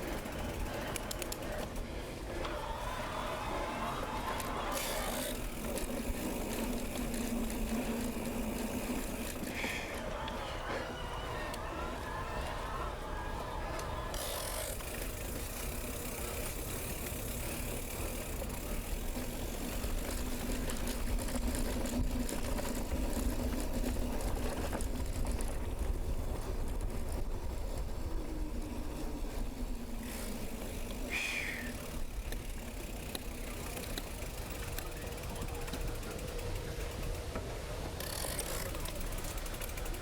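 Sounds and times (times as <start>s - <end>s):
wind rumbling on microphone: 19.2s - 30.5s.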